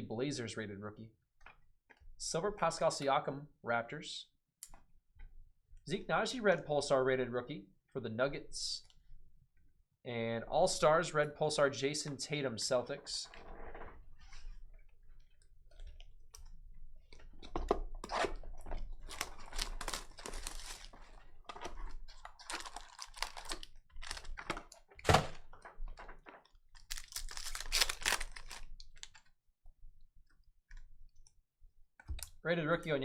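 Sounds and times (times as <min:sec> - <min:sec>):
wrappers crinkling and tearing: 0:18.9 - 0:24.7, 0:26.7 - 0:29.3
cards being handled: 0:26.8 - 0:29.2.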